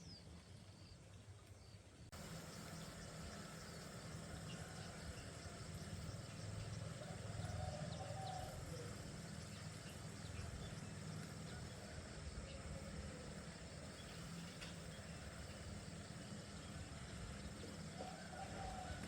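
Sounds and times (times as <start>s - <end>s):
faint wavering animal calls: 3.3s - 10.6s, 17.8s - 19.0s.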